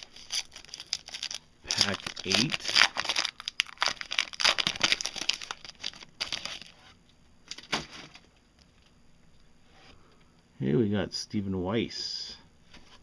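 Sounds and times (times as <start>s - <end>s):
wrapper crinkling and tearing: 0.0s - 6.8s.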